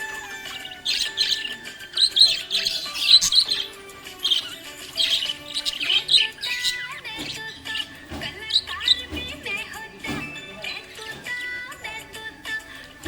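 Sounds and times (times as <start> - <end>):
budgerigar chirping and warbling: 0.0 - 9.8.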